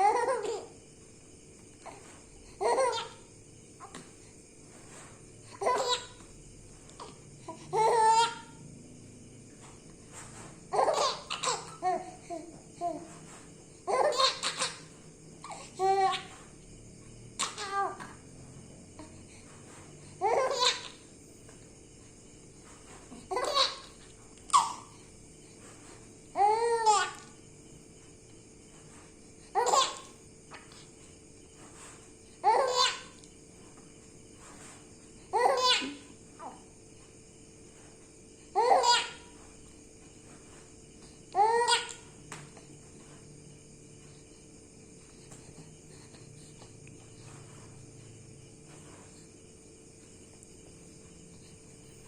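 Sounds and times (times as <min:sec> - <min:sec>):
baby laughing: 0:00.0 - 0:00.7, 0:02.6 - 0:03.2, 0:05.6 - 0:06.1, 0:07.8 - 0:08.5, 0:10.7 - 0:12.1, 0:13.9 - 0:16.2, 0:17.4 - 0:18.0, 0:20.2 - 0:21.0, 0:23.3 - 0:23.9, 0:29.6 - 0:30.1, 0:32.4 - 0:33.1, 0:35.4 - 0:36.1, 0:38.6 - 0:39.3, 0:41.4 - 0:42.0.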